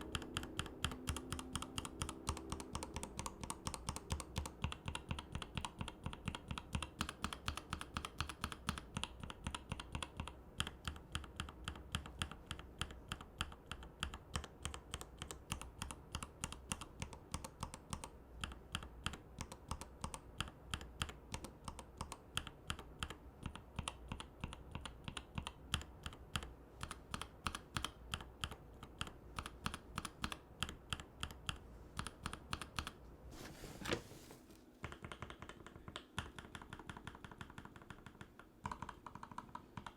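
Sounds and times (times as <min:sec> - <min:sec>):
typing on mechanical keyboard: 0:00.0 - 0:33.0, 0:34.8 - 0:39.9.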